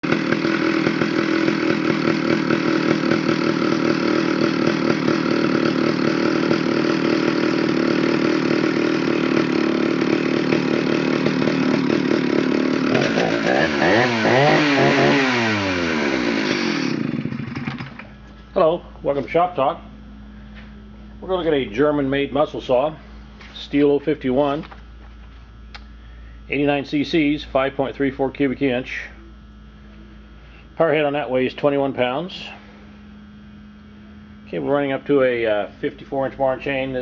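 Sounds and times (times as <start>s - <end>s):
chainsaw engine revving: 0.0s - 18.2s.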